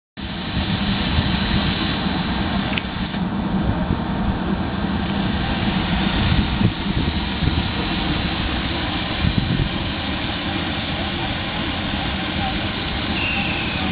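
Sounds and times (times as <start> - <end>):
steam train rumble and hiss: 0.2 - 13.9
thin high tone: 12.0 - 13.9.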